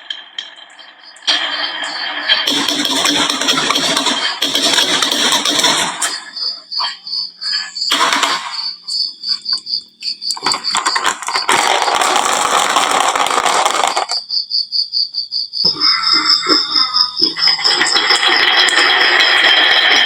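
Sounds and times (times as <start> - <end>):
pulsing high-pitched chirp: 0.0 - 12.6, 14.2 - 20.0
marbles rattling down wooden track: 10.4 - 14.3, 16.2 - 20.0.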